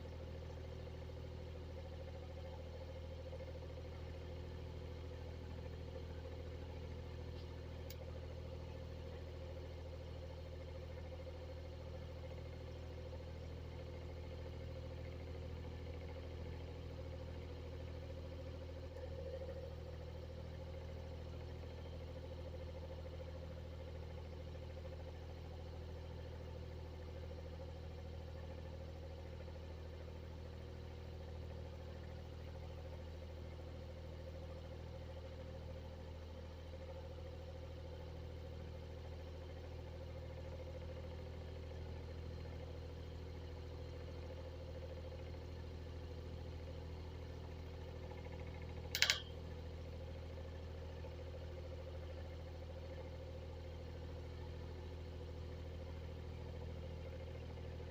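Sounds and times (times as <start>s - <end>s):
electric exhaust fan humming: 48.9s - 49.3s.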